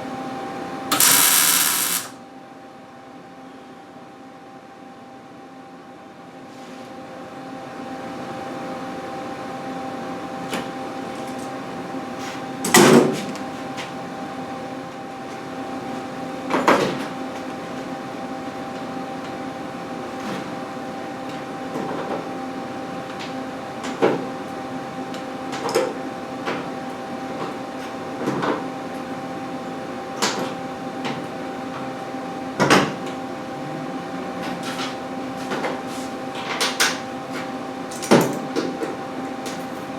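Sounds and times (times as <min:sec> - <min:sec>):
steady motor hum: 0:00.8 - 0:02.2.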